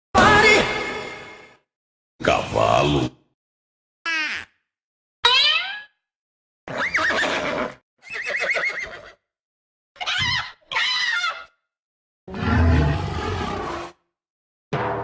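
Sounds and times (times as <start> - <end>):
horse whinnying: 6.7 - 9.2.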